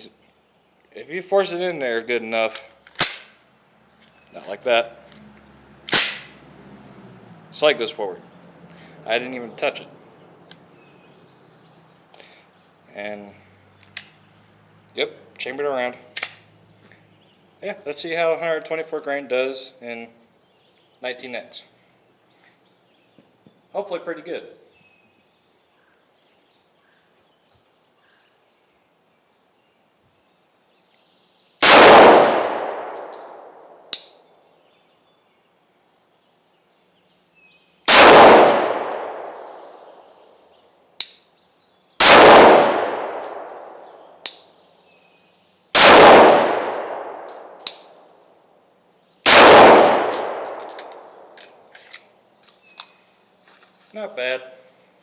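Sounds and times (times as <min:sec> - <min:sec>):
pistol shots with echo: 0:05.9 - 0:06.4, 0:31.6 - 0:34.1, 0:37.9 - 0:39.8, 0:42.0 - 0:44.4, 0:45.8 - 0:47.9, 0:49.3 - 0:51.3.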